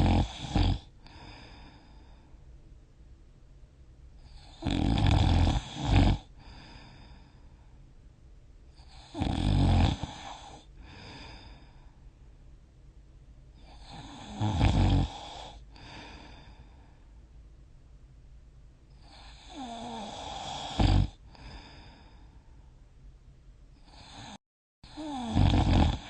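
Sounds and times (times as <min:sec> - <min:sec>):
person snoring: 0:00.0 - 0:02.0, 0:04.2 - 0:07.3, 0:08.8 - 0:11.8, 0:13.6 - 0:16.7, 0:18.9 - 0:22.3, 0:23.8 - 0:26.0
soft breath: 0:00.9 - 0:02.6, 0:06.3 - 0:08.0, 0:10.1 - 0:12.4, 0:15.1 - 0:17.4, 0:21.2 - 0:22.9.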